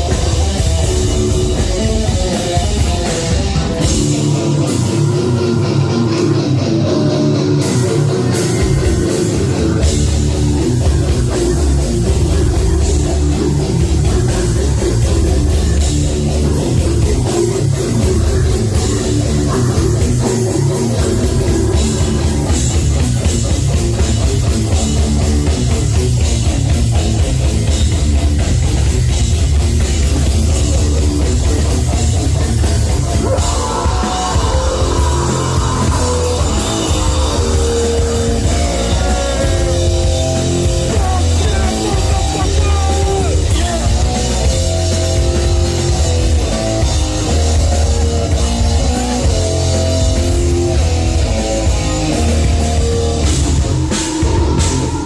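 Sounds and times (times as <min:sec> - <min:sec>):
heavy metal band playing: 0:00.0 - 0:55.0
melodic guitar line: 0:00.0 - 0:55.0.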